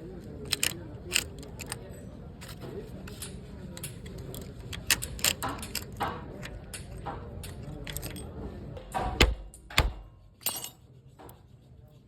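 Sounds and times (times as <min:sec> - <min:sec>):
metal tools clinking: 0:00.4 - 0:10.9
heavy knocks: 0:08.8 - 0:10.2.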